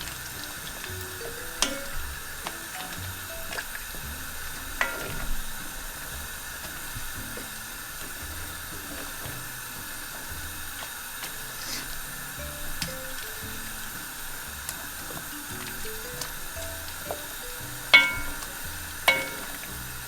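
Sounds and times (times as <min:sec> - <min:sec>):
pot simmering with hiss: 0:00.0 - 0:20.0
sharp clinks: 0:17.9 - 0:19.5.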